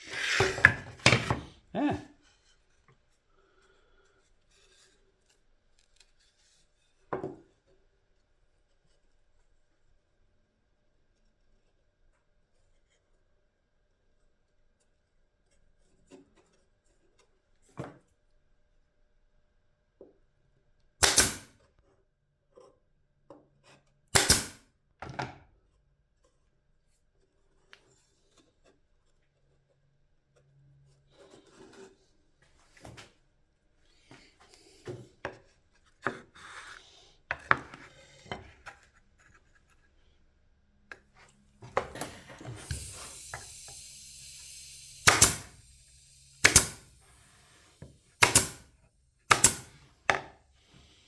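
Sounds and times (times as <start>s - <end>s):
wooden parts rubbing and clicking: 0.0s - 1.6s.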